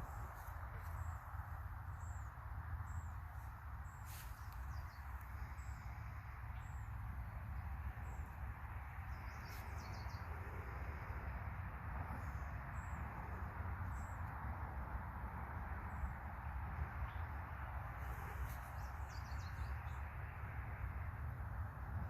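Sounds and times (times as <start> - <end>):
small birds chirping: 0.0 - 11.1, 18.2 - 20.0
steady low rumble: 0.0 - 22.0.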